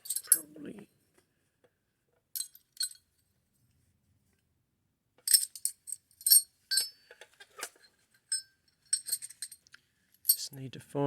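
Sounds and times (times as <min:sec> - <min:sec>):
metal nuts and bolts clinking: 0:00.0 - 0:00.6, 0:02.4 - 0:03.1, 0:05.2 - 0:10.5.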